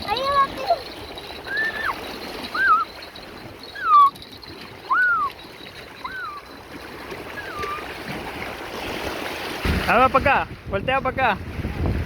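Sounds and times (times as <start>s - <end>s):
light splashing water: 0.0s - 10.6s
short whistled calls: 1.4s - 4.2s, 4.9s - 5.4s, 6.0s - 6.6s, 7.4s - 7.9s.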